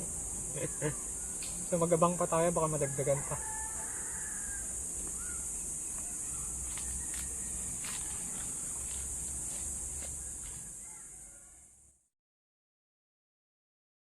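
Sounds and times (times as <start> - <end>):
high-pitched insect drone: 0.0 - 12.0
faint bird chirps: 0.5 - 1.8, 4.0 - 9.1, 10.2 - 11.8.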